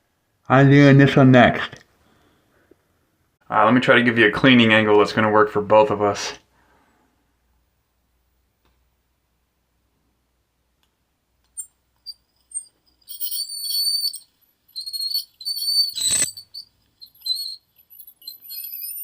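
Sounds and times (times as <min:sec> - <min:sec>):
dental drill whining: 0:12.1 - 0:19.0.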